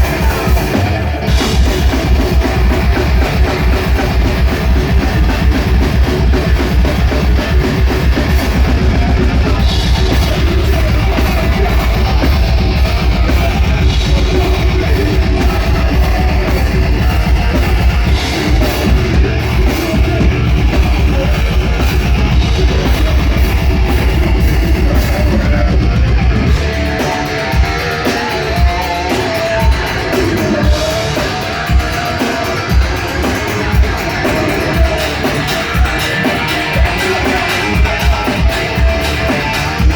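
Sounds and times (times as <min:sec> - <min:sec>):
heavy drum hits: 0:00.0 - 0:27.8
heavy metal band playing: 0:00.0 - 0:39.9.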